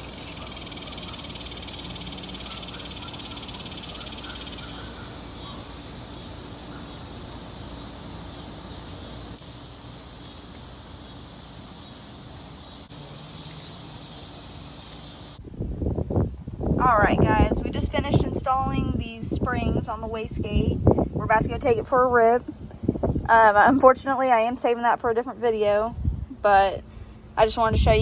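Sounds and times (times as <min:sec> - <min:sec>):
insects trilling: 0:00.0 - 0:15.4
low steady hum: 0:00.0 - 0:28.0.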